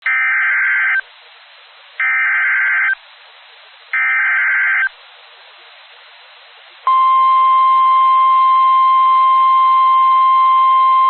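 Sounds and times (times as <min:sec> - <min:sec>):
faint hiss: 0:01.0 - 0:02.0, 0:03.0 - 0:04.0, 0:04.9 - 0:08.3.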